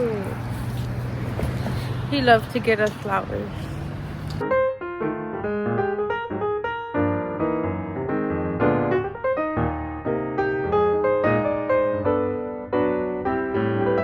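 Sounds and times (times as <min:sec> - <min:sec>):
gentle piano music: 0:04.4 - 0:14.0.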